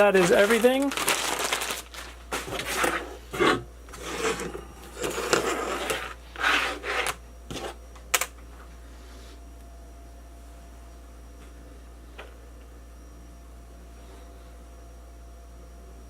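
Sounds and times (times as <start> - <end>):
packaging rustling and clattering: 0.0 - 6.0.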